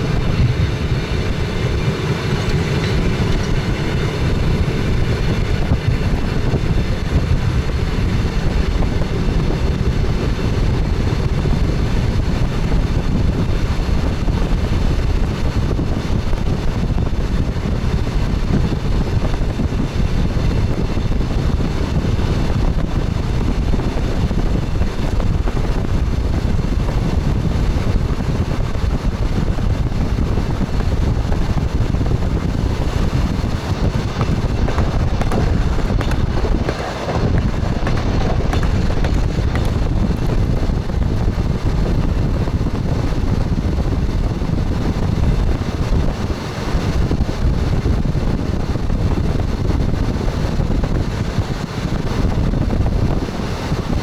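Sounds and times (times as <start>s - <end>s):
train running rumble: 0.0s - 54.0s
wind noise: 0.0s - 54.0s.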